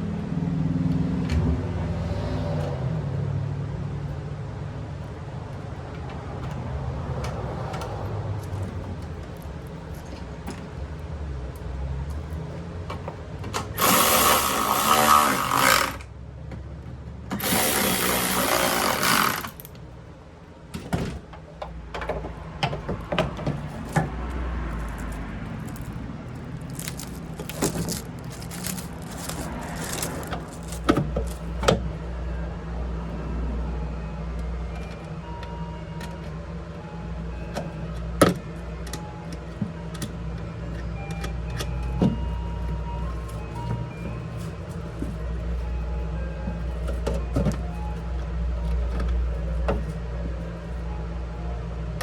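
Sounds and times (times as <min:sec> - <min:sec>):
power drill running: 0:13.8 - 0:16.1, 0:17.3 - 0:19.7
clicks and knocks of parts handled: 0:20.8 - 0:31.9.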